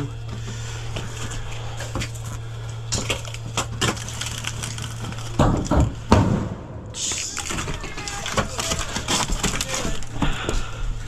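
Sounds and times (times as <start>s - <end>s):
sharp knocks and cracks: 2.9s - 10.1s
heavy thumps: 5.4s - 10.0s.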